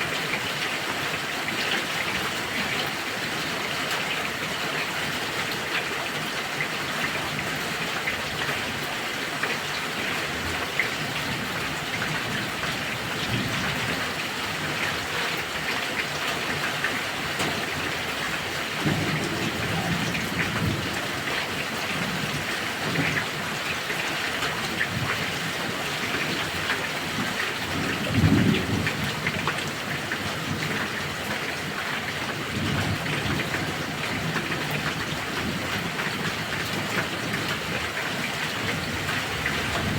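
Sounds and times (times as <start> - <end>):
heavy rain pouring: 0.0 - 39.9
thunder rumbling: 18.8 - 21.3.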